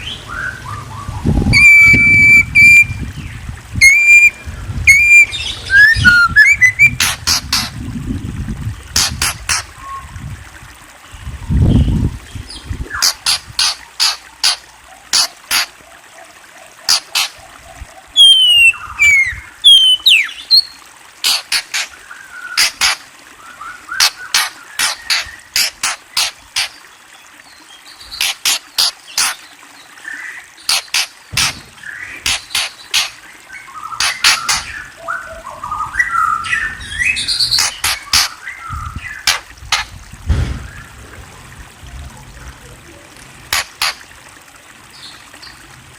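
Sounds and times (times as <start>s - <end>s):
bird whistled falling notes: 1.5s - 3.0s, 3.8s - 7.0s
bird chattering warble: 3.8s - 7.8s, 9.0s - 9.9s, 12.9s - 15.8s, 16.8s - 17.5s, 18.2s - 23.0s, 24.0s - 26.8s, 28.0s - 29.4s, 30.6s - 39.9s, 43.5s - 44.0s.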